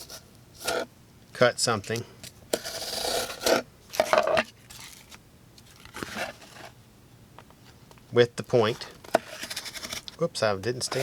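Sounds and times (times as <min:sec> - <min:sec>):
knife blade scraping through material: 0:00.0 - 0:00.9, 0:02.6 - 0:04.1.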